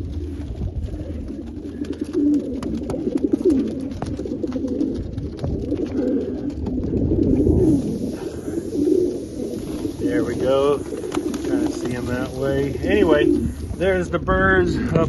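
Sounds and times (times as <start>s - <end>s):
pigeons cooing: 0.0s - 13.9s.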